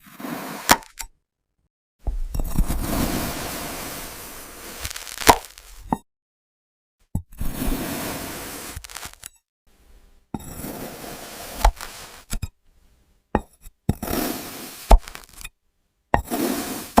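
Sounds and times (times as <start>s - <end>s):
blade slicing through sand: 0.0s - 0.9s, 2.5s - 5.9s, 7.4s - 9.3s, 10.5s - 12.4s, 14.0s - 15.4s, 16.2s - 17.0s.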